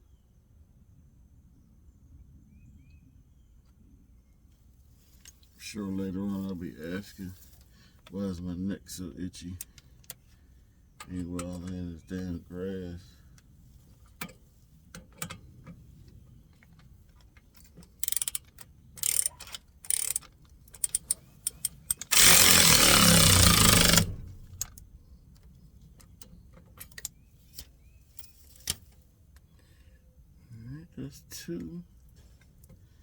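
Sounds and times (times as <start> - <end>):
ratchet clicking: 17.6 - 24.8.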